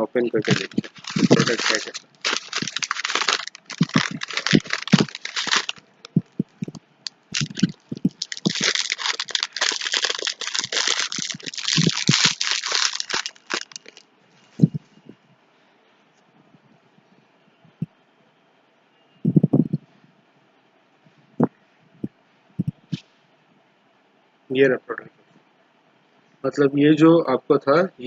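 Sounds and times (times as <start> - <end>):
paper wrapping crinkling: 0.0 - 14.0.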